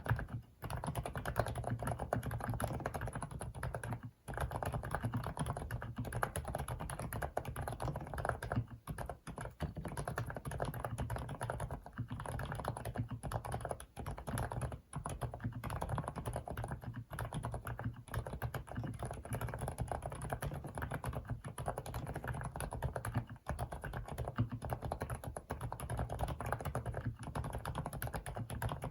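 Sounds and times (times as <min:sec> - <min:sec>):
soft mechanical keyboard typing: 0:00.0 - 0:28.9.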